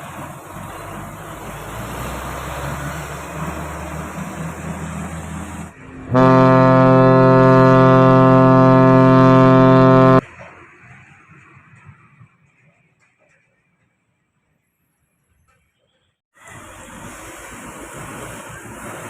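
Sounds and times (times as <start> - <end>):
heavy vehicle passing: 0.2 - 10.4
low air horn blast: 6.0 - 10.2.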